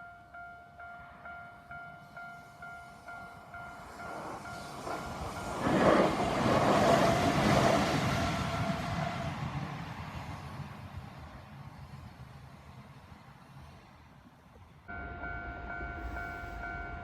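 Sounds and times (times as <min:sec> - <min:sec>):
level crossing warning bell: 0:00.0 - 0:07.0, 0:14.9 - 0:17.0
train passing: 0:00.0 - 0:17.0.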